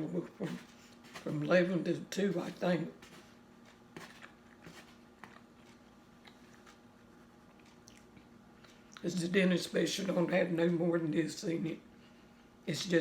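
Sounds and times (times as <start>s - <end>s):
low steady hum: 0.0s - 13.0s
quiet chewing: 3.0s - 9.1s.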